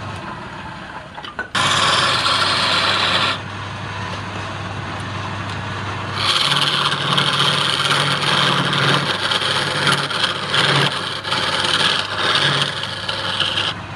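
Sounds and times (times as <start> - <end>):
tool scraping spinning wood: 1.5 - 3.4, 6.1 - 13.8
lathe motor hum: 1.5 - 13.9.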